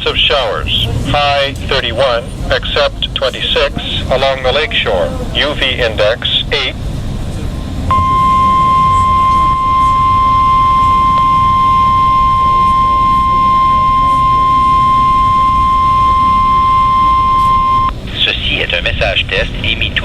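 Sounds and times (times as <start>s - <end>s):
high-pitched alarm tone: 7.9s - 17.9s.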